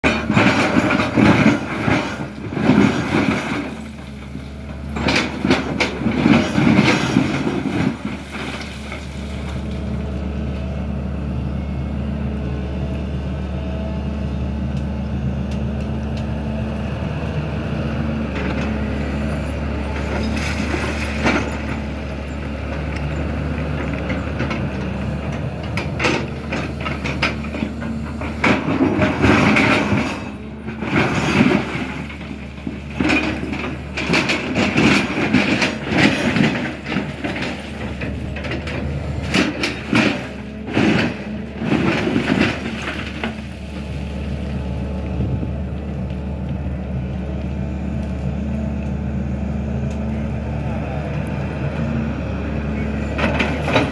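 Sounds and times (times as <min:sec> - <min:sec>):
digging gear clanking and knocking: 0:00.0 - 0:09.6, 0:19.4 - 0:43.5, 0:53.0 - 0:53.9
excavator diesel engine running: 0:00.0 - 0:53.9.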